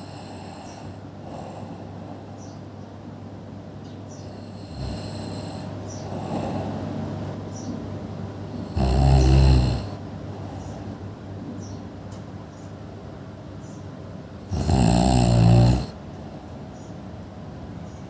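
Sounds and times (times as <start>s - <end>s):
loud snoring: 0.0s - 2.0s, 4.2s - 6.9s, 8.5s - 10.0s, 14.4s - 16.0s.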